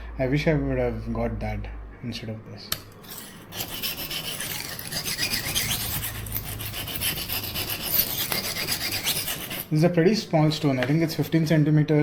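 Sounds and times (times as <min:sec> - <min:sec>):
knife scraping on sharpening stone: 0:02.9 - 0:09.7.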